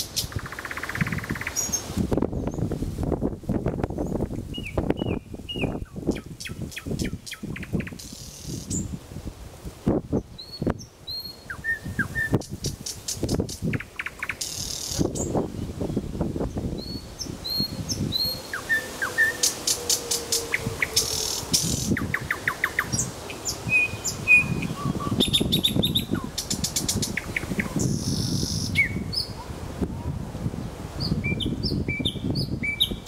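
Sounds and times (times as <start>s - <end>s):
bird singing: 4.0s - 8.9s, 10.2s - 12.5s, 16.8s - 29.4s, 31.0s - 33.0s.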